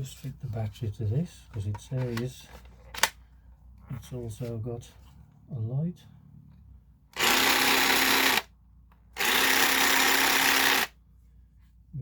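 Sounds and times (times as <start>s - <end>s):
cordless jigsaw running: 7.2s - 8.5s, 9.2s - 11.0s.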